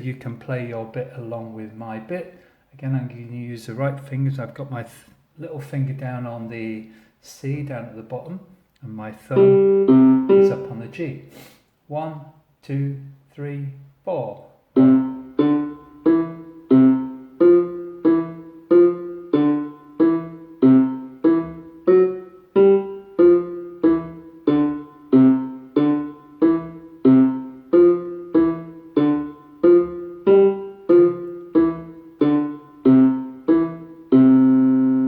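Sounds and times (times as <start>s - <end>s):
keyboard piano staccato bass notes: 9.3s - 10.9s, 14.8s - 35.0s.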